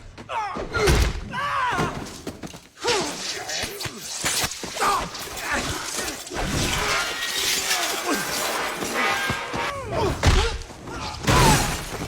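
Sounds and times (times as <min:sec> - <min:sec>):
things crashing: 0:04.6 - 0:10.4
glass shattering: 0:05.1 - 0:09.5.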